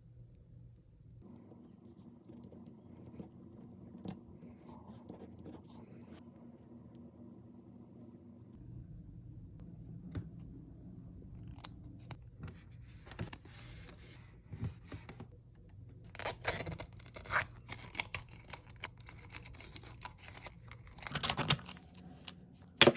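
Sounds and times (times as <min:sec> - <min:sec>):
packaging crinkling: 0:16.2 - 0:21.8.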